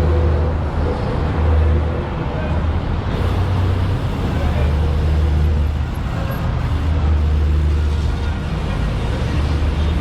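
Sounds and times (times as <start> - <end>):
road noise: 0.0 - 10.0
vehicle engine running: 3.1 - 10.0.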